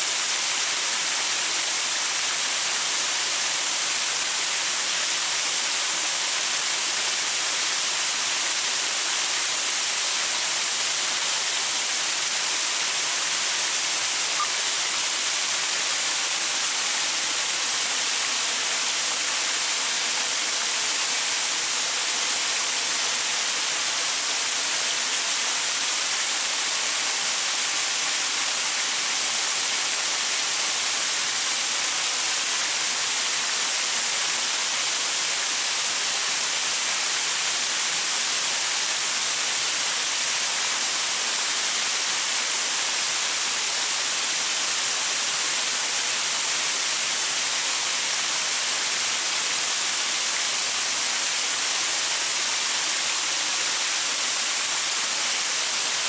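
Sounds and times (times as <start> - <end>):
waterfall splashing over rocks: 0.0 - 56.0.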